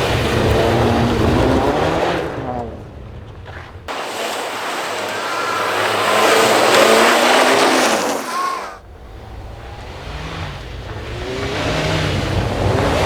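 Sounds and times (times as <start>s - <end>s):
rally car engine running hard: 0.0s - 13.0s
tyres hissing on snow: 3.9s - 13.0s.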